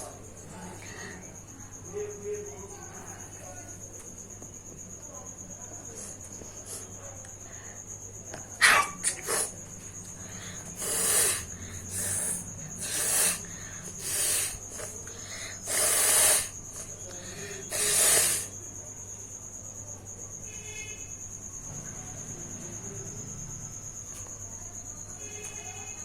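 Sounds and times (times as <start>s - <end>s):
person blowing nose: 8.6s - 9.5s, 10.4s - 18.5s.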